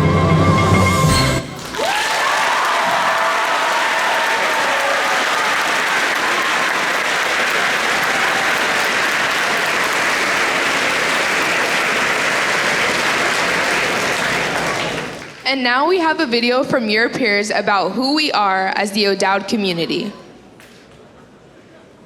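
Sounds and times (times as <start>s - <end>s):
large audience applauding: 1.4s - 15.5s.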